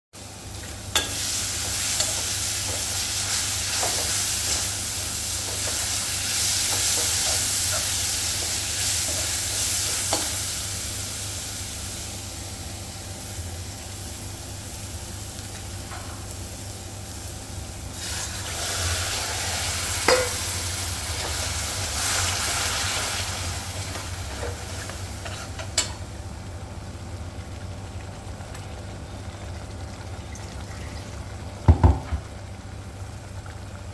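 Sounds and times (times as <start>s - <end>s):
food sizzling in hot oil: 0.2s - 26.0s.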